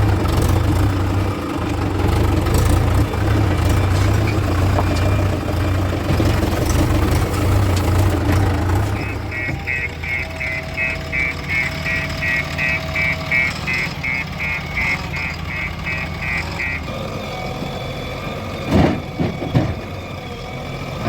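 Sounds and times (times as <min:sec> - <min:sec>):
heavy diesel engine running: 0:00.0 - 0:21.0
repeating high-pitched beep: 0:09.0 - 0:16.8.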